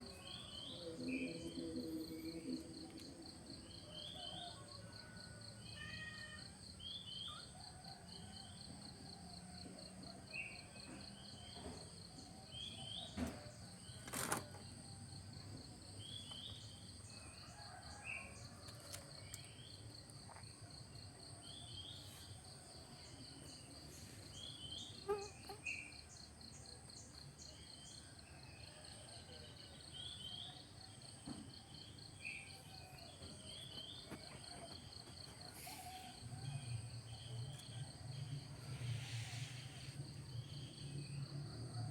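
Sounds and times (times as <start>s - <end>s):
insect trill: 10.3s - 41.9s.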